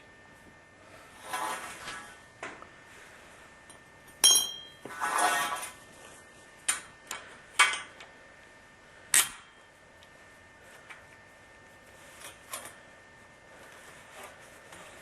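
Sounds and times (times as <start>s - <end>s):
scraping rasp: 1.2s - 2.2s, 4.9s - 5.8s
metallic clink: 4.2s - 4.8s.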